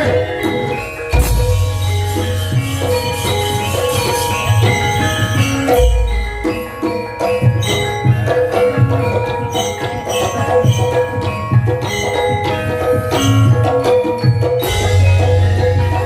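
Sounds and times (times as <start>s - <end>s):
low drum beats: 0.0s - 9.2s, 14.5s - 16.0s
struck metal mallet instruments: 0.0s - 16.0s.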